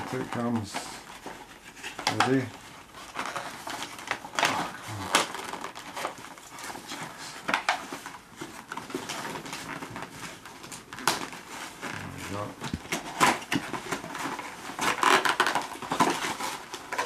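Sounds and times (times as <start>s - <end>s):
packaging rustling and scraping: 0.0s - 17.0s.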